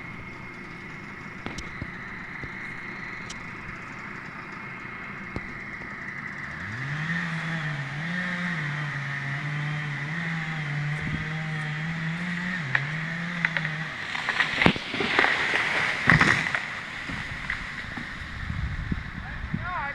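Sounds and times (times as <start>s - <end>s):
engine revving: 0.0s - 19.6s
sharp cracks and snaps: 12.7s - 17.6s.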